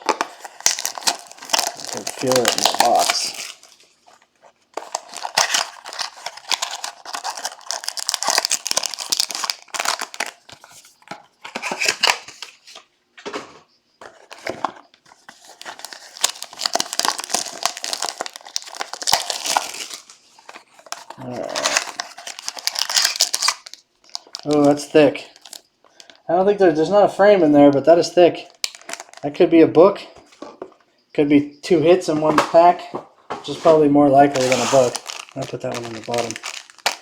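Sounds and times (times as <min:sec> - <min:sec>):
wrapping tearing: 0:00.0 - 0:11.0, 0:15.2 - 0:25.6, 0:28.6 - 0:29.2, 0:34.2 - 0:37.0
wrapping crinkling: 0:00.0 - 0:12.8, 0:14.0 - 0:26.2, 0:28.4 - 0:29.4, 0:33.4 - 0:37.0.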